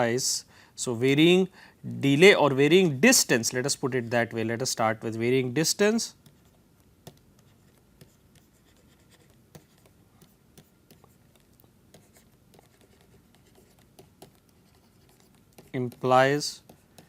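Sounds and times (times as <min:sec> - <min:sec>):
pen tapping and scratching: 0:06.1 - 0:17.0.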